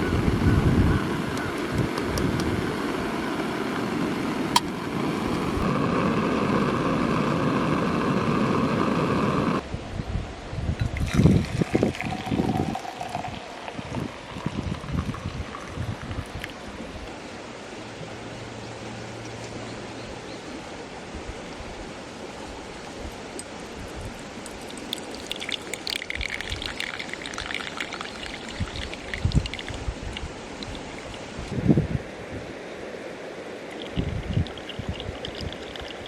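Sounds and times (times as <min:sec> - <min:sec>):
wind thumps on microphone: 0:13.8 - 0:16.4
river water rushing: 0:16.5 - 0:36.0.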